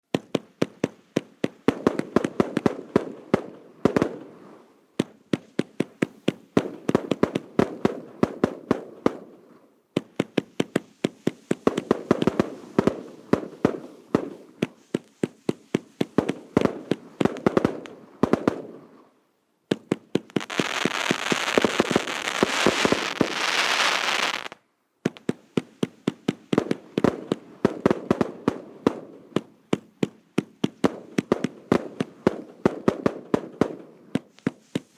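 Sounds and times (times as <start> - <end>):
fireworks crackling: 10.0 - 19.0, 19.7 - 34.9
hissing crackle: 19.7 - 25.7.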